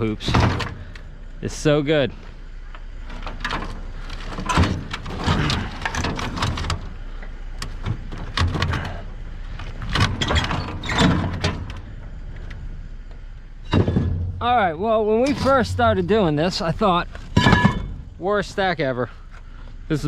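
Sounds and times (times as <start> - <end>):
steady low hum: 0.0 - 20.0
metal and plastic hoops clattering: 3.0 - 6.9, 15.2 - 18.6.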